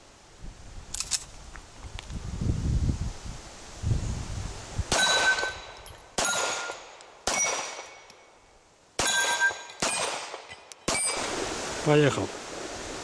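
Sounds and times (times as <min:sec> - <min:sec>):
bullet clanging on steel plate: 0:05.0 - 0:08.3, 0:09.0 - 0:11.2
gunshots: 0:06.2 - 0:08.0, 0:09.0 - 0:11.3.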